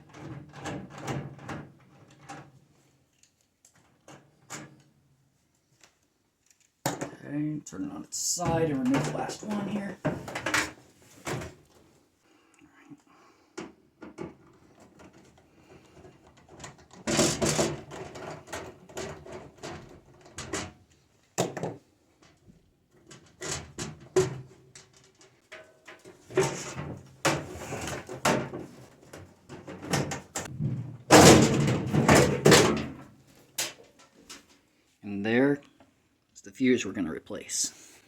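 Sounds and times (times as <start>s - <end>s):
sheet metal handling clatter: 23.2s - 34.4s.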